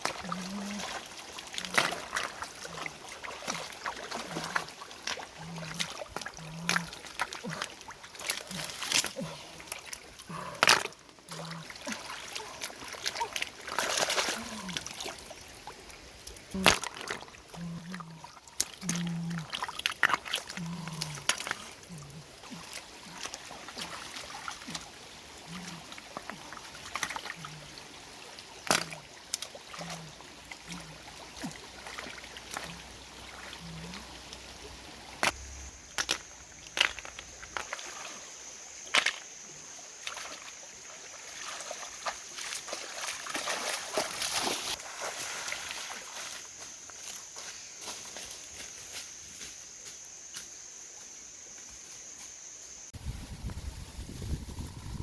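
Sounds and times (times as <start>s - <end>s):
water sloshing and splashing: 0.0s - 49.0s.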